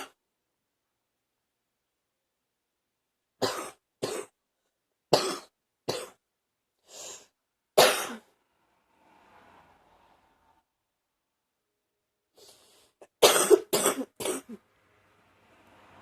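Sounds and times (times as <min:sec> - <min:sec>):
woman coughing: 0:03.4 - 0:04.4, 0:05.2 - 0:06.2, 0:07.8 - 0:08.2, 0:13.2 - 0:14.6
faint breathing: 0:06.8 - 0:07.4, 0:12.3 - 0:13.1.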